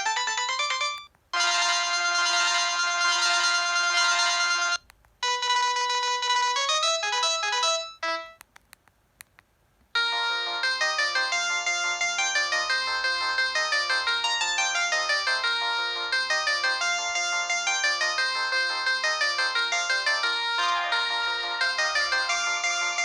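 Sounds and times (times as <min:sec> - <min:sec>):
mobile phone ringtones: 0:00.0 - 0:08.4, 0:10.0 - 0:23.0
faint clicks: 0:08.4 - 0:09.9.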